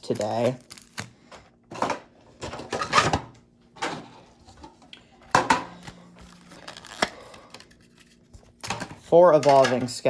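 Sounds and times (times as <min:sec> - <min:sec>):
card packaging rustling: 0:00.0 - 0:01.2, 0:05.4 - 0:09.2.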